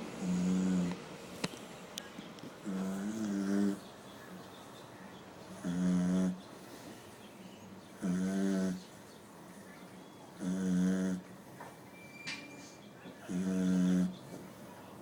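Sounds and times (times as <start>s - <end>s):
dog snoring: 0.2s - 1.0s, 2.6s - 3.8s, 5.5s - 6.4s, 7.9s - 9.0s, 10.4s - 11.3s, 13.1s - 14.4s.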